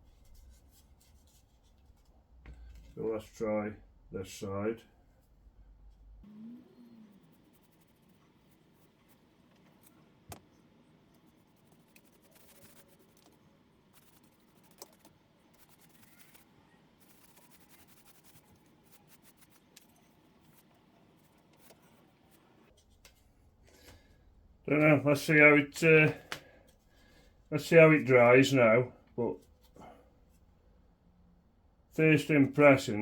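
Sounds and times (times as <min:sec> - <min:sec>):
paintbrush strokes on board: 0:11.2 - 0:23.0.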